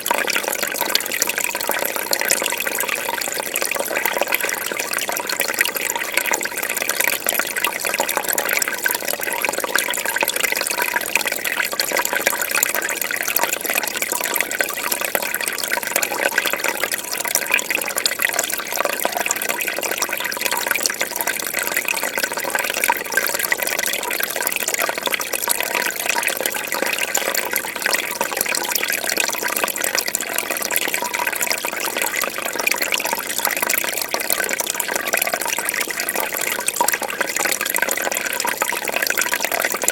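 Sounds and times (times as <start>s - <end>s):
trickling water: 0.0s - 39.9s.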